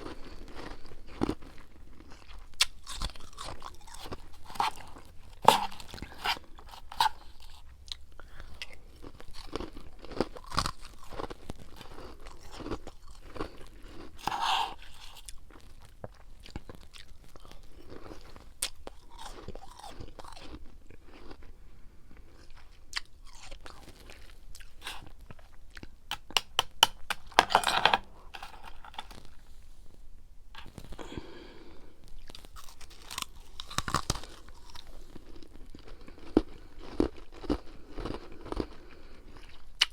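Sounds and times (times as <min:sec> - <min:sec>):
person crunching ice: 0:02.6 - 0:07.7, 0:09.3 - 0:15.6, 0:23.4 - 0:25.1, 0:26.1 - 0:29.3, 0:32.2 - 0:35.0.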